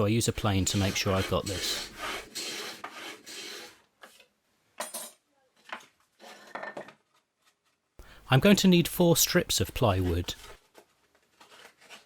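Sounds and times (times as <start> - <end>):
hand plane shaving plywood: 0.1 - 4.2, 9.8 - 12.0.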